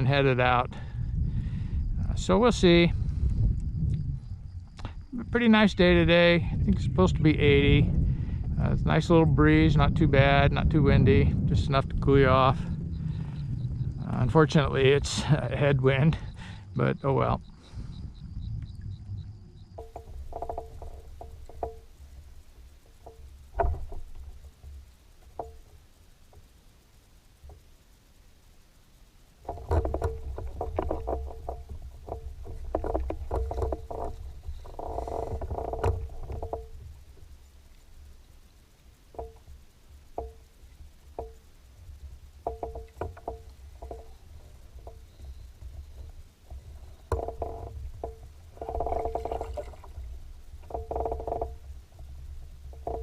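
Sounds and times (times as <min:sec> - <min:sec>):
wind rumble: 0:00.0 - 0:53.0
hollow knocks on boat hull: 0:40.2 - 0:40.4, 0:41.2 - 0:41.4, 0:42.4 - 0:44.1
waves slapping boat hull: 0:42.2 - 0:53.0.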